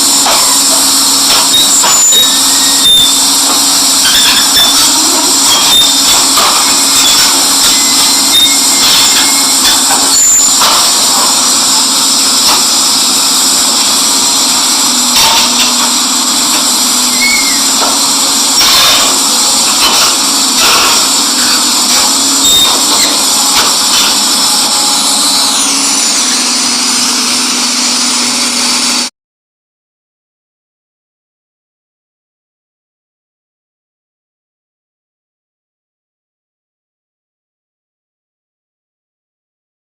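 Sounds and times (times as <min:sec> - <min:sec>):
excavator engine and machinery: 0:00.0 - 0:29.1.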